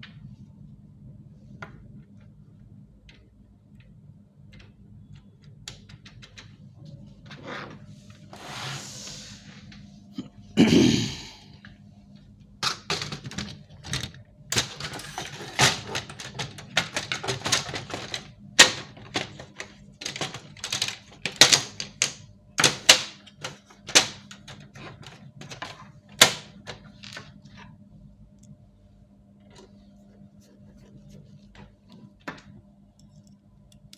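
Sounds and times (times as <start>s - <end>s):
rustling scrape: 7.8s - 9.6s.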